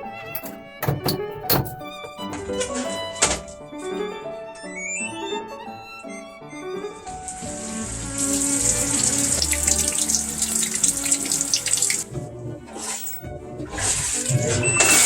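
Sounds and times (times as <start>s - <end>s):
quiet background music: 0.0s - 15.0s
water running in a stream: 7.0s - 15.0s.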